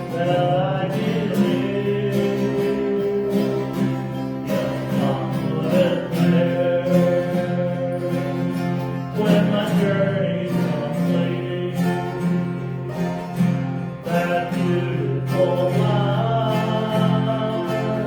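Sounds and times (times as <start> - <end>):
acoustic guitar strumming chords: 0.0 - 18.0.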